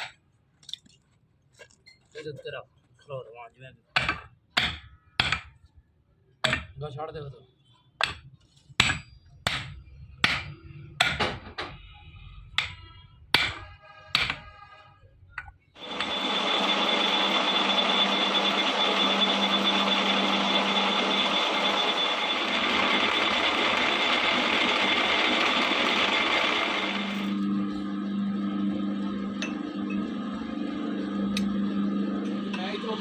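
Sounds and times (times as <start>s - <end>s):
hammer striking metal: 4.0s - 5.5s, 6.4s - 6.7s, 8.0s - 8.2s, 8.8s - 11.8s, 12.6s - 12.8s, 13.4s - 14.5s
power tool whining: 15.8s - 32.8s.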